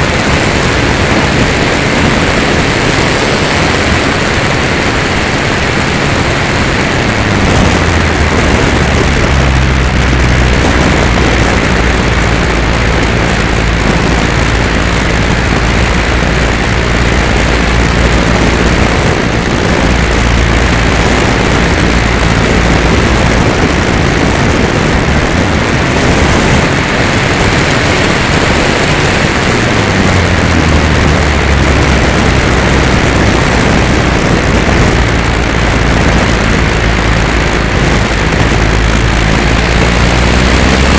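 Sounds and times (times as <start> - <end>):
wind rush: 0.0 - 40.9.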